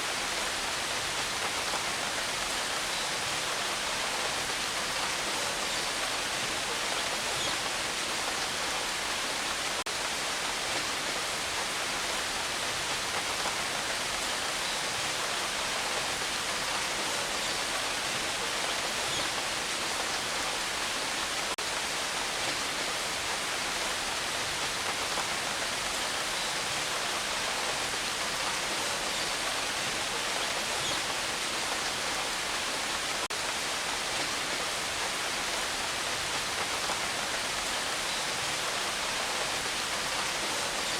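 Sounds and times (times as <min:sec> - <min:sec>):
steady rain: 0:00.0 - 0:40.9.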